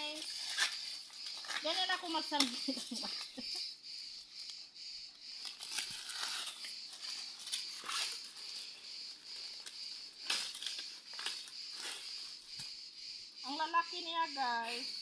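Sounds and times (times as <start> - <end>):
dry corn leaves rustling: 0.0 - 3.5, 5.4 - 12.7
insect chorus: 0.0 - 15.0.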